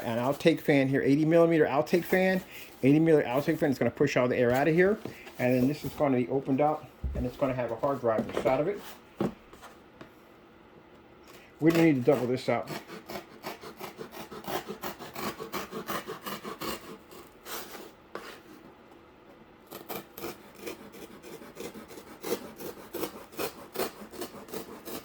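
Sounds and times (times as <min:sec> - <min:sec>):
blade sawing cardboard: 0:01.4 - 0:03.8, 0:11.6 - 0:18.6, 0:19.7 - 0:25.0.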